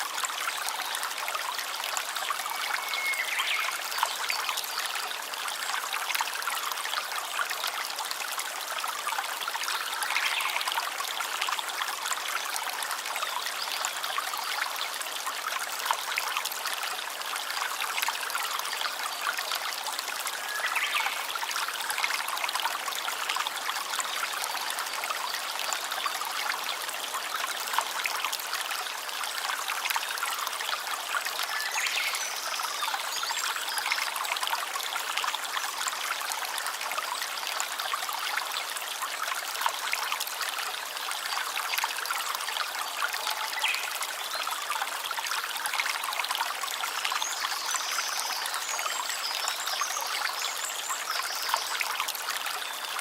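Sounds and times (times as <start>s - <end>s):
stream trickling and splashing: 0.0s - 53.0s.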